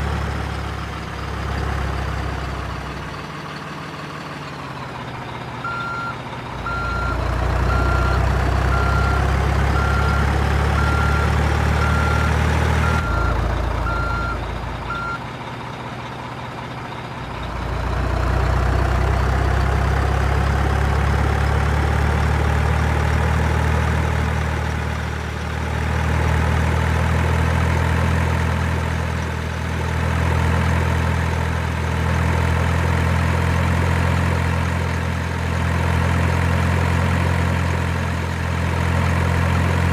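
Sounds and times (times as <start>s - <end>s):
simulated truck engine: 0.0s - 39.9s
reversing beeper: 5.6s - 15.2s.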